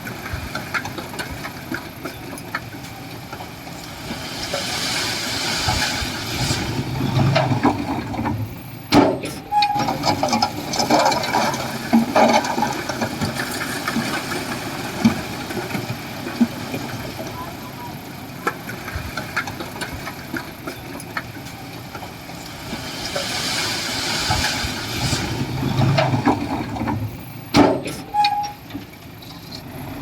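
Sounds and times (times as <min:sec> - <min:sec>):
bulldozer diesel engine under load: 0:00.0 - 0:30.0
scraping and clanking of rock: 0:09.8 - 0:17.1, 0:27.8 - 0:29.8.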